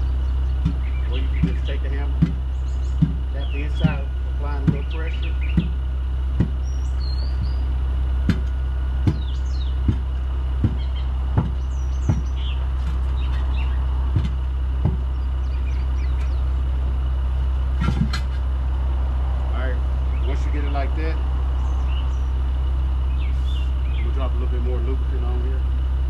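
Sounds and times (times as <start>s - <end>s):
low engine hum: 0.0s - 26.0s
hammer tapping tire onto rim: 0.6s - 6.7s, 8.2s - 15.2s.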